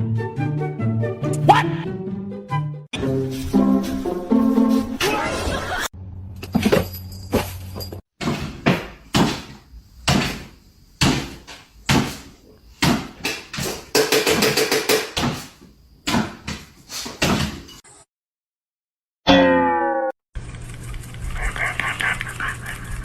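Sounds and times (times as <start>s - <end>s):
sharp knocks and bangs: 8.2s - 17.8s.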